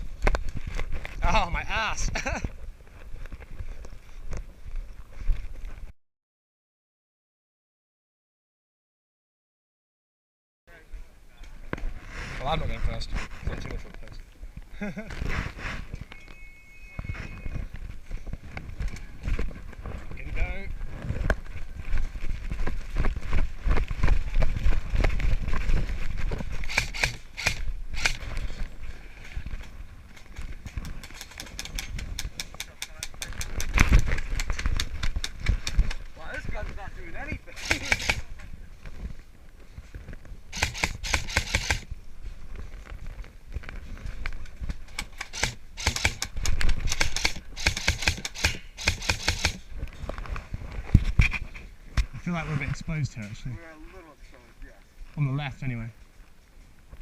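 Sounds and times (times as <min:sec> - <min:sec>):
gear jostling against camera: 0:15.0 - 0:54.5
running footsteps: 0:17.0 - 0:52.8
sharp cracks: 0:26.6 - 0:28.3, 0:37.6 - 0:38.3, 0:40.5 - 0:41.9, 0:44.9 - 0:49.6
airsoft guns firing: 0:37.6 - 0:38.3, 0:40.6 - 0:41.9, 0:45.0 - 0:49.6.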